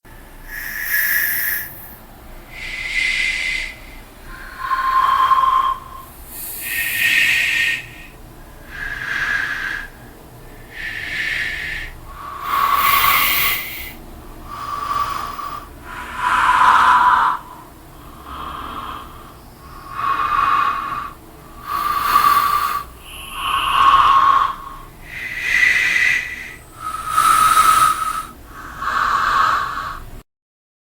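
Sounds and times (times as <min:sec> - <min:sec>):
slow raspy breathing: 0:00.1 - 0:30.2.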